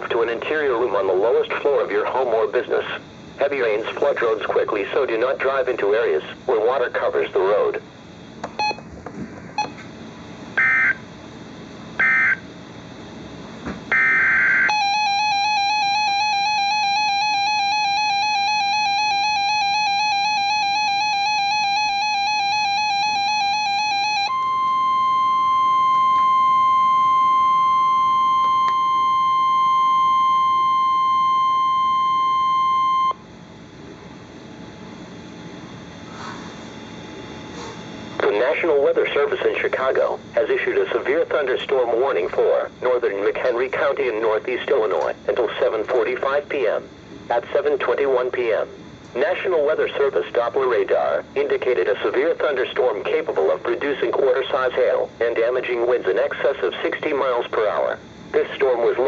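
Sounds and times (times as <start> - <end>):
steady single-pitch alarm tone: 10.5 - 11.2, 11.9 - 12.7, 13.9 - 33.4
warbling two-tone alert signal: 13.9 - 33.2.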